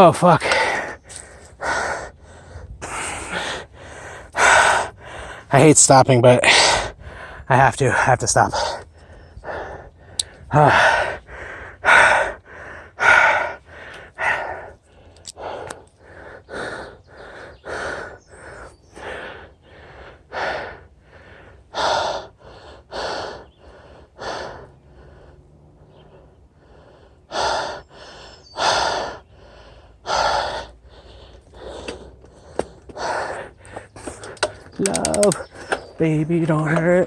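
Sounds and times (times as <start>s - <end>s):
person panting: 0.4s - 5.6s, 6.4s - 7.5s, 8.5s - 35.9s.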